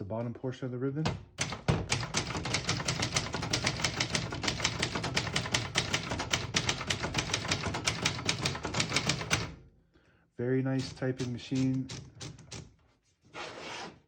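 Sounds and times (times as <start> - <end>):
typewriter typing: 1.1 - 9.6, 10.8 - 12.8.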